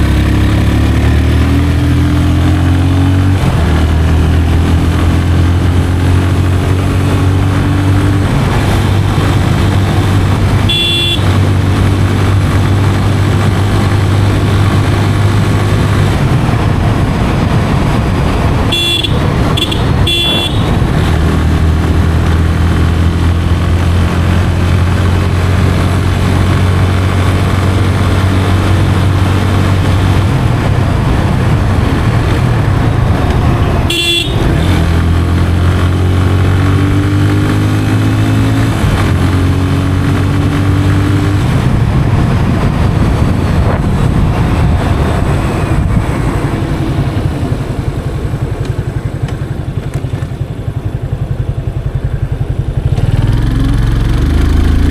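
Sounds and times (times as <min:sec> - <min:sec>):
motorcycle engine running: 0:00.0 - 0:54.9
horn toot: 0:10.6 - 0:11.4, 0:18.6 - 0:20.8, 0:33.8 - 0:34.9.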